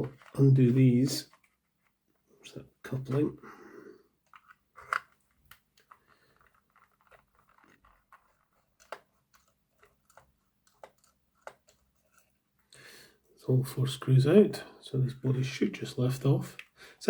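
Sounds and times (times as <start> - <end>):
screwdriver clicks and scrapes: 4.3 - 12.3.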